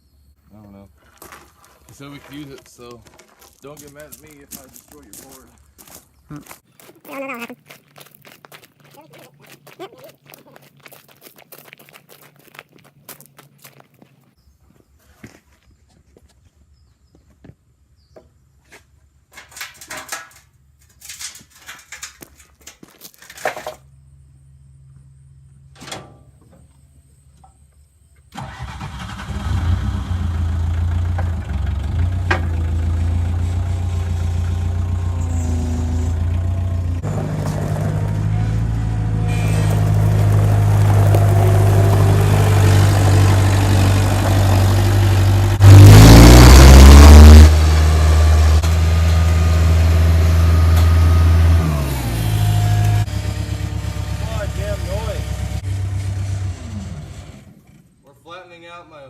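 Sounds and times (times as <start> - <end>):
loader engine running and revving: 28.5 - 57.7.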